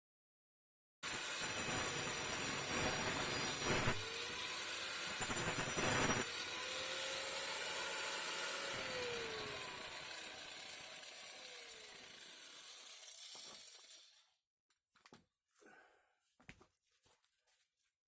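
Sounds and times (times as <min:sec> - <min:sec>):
angle grinder cutting wood: 0:01.0 - 0:14.2.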